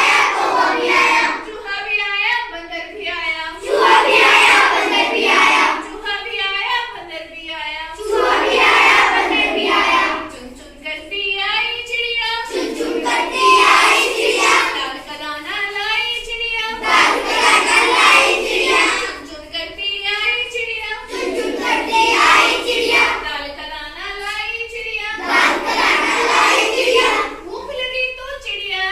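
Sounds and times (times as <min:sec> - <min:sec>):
children singing in chorus: 0:00.0 - 0:01.5, 0:03.6 - 0:06.0, 0:08.0 - 0:10.6, 0:12.4 - 0:15.0, 0:16.7 - 0:19.3, 0:21.0 - 0:23.5, 0:25.1 - 0:27.4.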